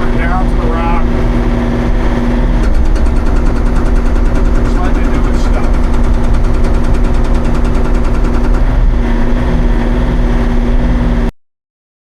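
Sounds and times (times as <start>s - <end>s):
excavator engine running: 0.0s - 11.3s
hydraulic breaker hammering rock: 2.5s - 9.8s.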